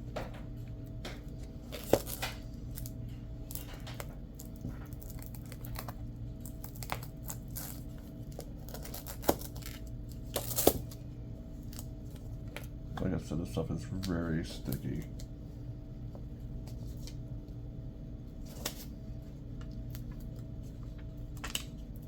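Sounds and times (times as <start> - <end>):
steady low hum: 0.0 - 22.0
plastic rustling and crinkling: 1.3 - 11.0.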